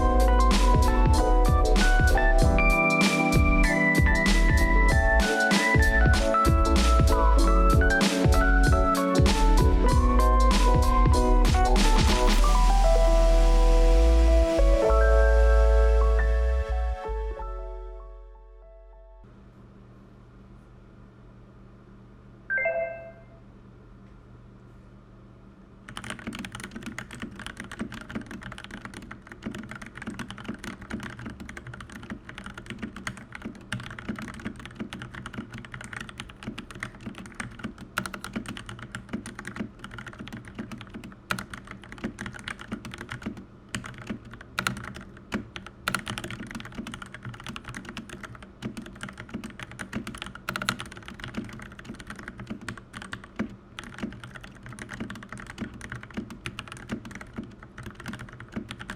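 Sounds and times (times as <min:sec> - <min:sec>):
mechanical keyboard typing: 0:25.9 - 0:58.9.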